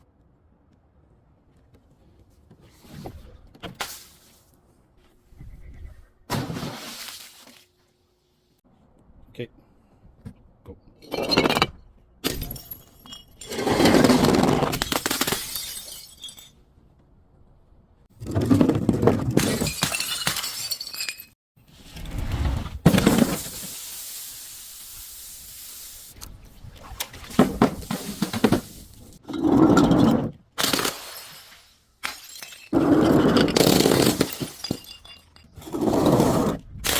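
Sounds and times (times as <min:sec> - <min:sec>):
glass bottles smashing: 0:11.1 - 0:16.6, 0:19.4 - 0:21.4, 0:30.6 - 0:35.8.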